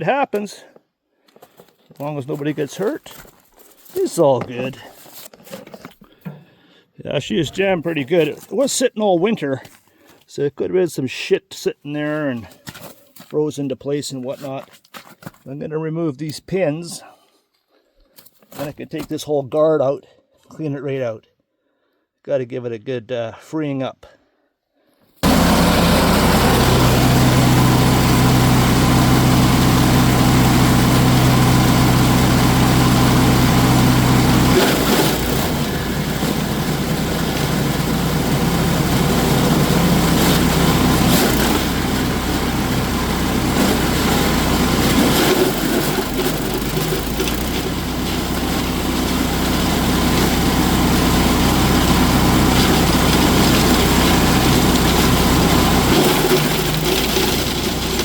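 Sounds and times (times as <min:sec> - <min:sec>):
wood chipper engine running: 0:02.0 - 0:03.2, 0:25.2 - 0:58.0.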